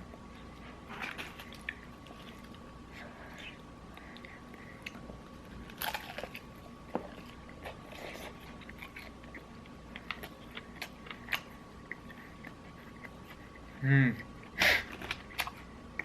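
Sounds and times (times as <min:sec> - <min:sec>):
close-miked chewing: 0:00.0 - 0:16.0.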